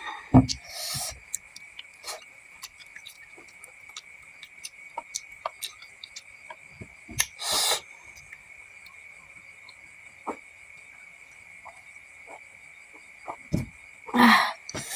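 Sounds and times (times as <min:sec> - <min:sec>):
mouth clicks while chewing: 0:00.5 - 0:09.0.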